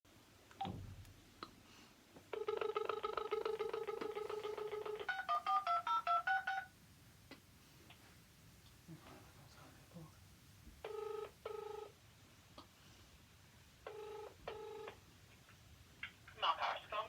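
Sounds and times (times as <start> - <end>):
phone dial tone: 2.3 - 6.7, 10.8 - 12.0, 13.8 - 15.0
touch-tone beeps: 2.4 - 6.7.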